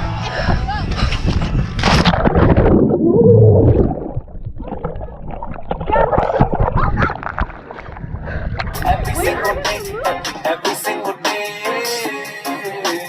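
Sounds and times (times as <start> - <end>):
bubbles crackling on microphone: 1.3 - 9.4
splash into water: 1.8 - 8.0
underwater bubbling: 1.8 - 10.0.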